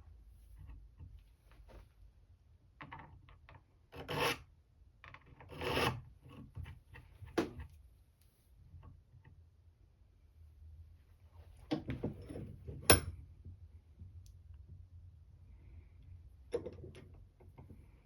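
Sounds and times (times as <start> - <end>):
file rasping on steel: 4.0 - 4.4, 5.5 - 6.1.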